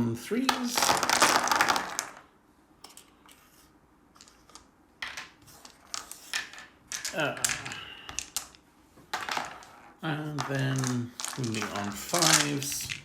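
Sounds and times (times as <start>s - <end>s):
dice clicking: 0.5s - 2.2s, 4.2s - 13.0s
dice rattling: 0.5s - 2.3s, 4.2s - 13.0s.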